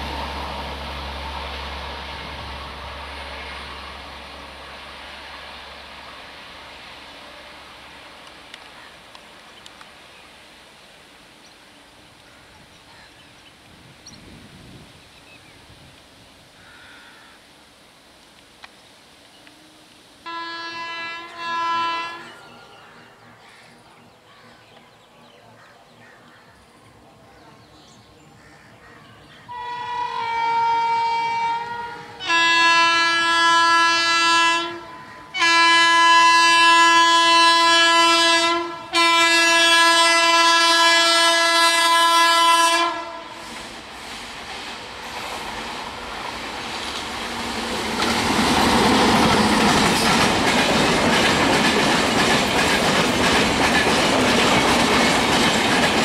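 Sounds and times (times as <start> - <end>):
approaching train noise: 0.0 - 56.0
locomotive air horn blasts: 20.2 - 22.4, 29.5 - 43.6.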